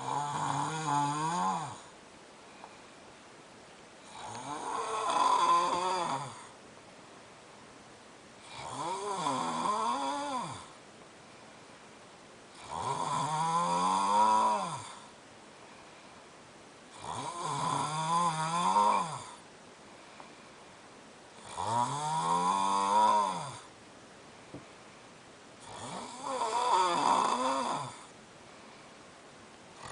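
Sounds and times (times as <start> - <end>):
man snoring loudly: 0.0 - 1.9, 4.0 - 6.5, 8.4 - 10.8, 12.6 - 15.1, 16.9 - 19.4, 21.4 - 23.7, 25.6 - 28.1
quiet breathing: 0.0 - 6.6, 7.2 - 29.9.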